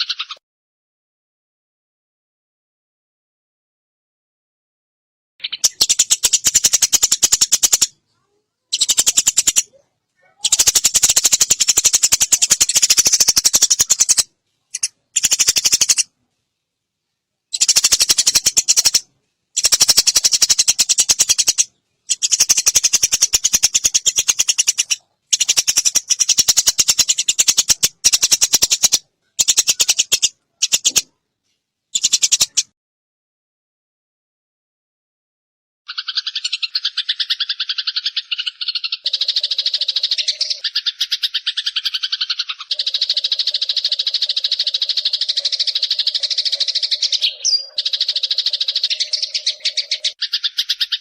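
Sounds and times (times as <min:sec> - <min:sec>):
sparrow chattering calls: 0:05.4 - 0:08.0, 0:08.7 - 0:16.1, 0:17.5 - 0:31.1, 0:32.0 - 0:32.7, 0:35.9 - 0:51.0.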